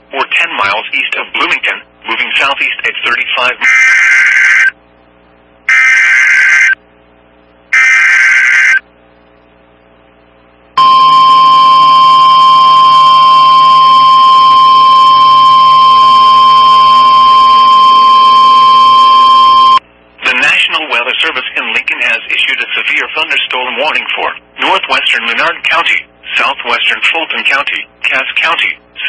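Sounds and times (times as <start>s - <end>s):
steady warning alarm tone: 5.7s - 6.8s, 7.8s - 8.8s, 10.8s - 19.8s.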